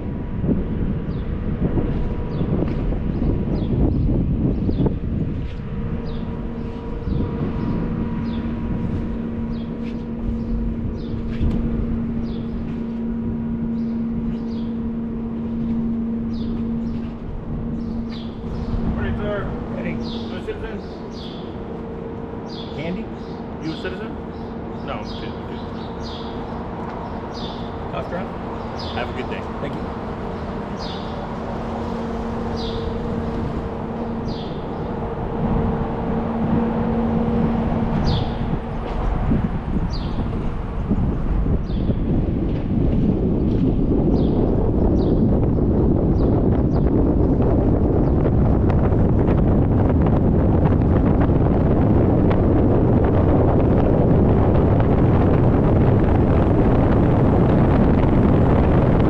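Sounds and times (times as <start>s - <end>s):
road noise: 0.0s - 59.0s
wind buffeting microphone: 0.0s - 59.0s
car engine humming: 3.8s - 41.6s
car road noise at speed: 29.6s - 59.0s.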